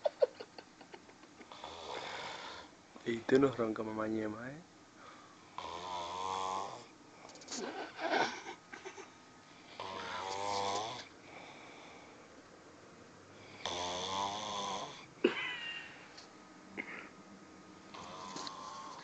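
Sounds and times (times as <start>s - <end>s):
noisy breathing: 1.4s - 3.6s, 4.9s - 8.2s, 9.4s - 12.3s, 13.3s - 15.1s, 17.9s - 19.0s
person snoring: 1.5s - 2.7s, 5.6s - 6.9s, 9.7s - 12.0s, 13.4s - 15.1s, 17.9s - 19.0s.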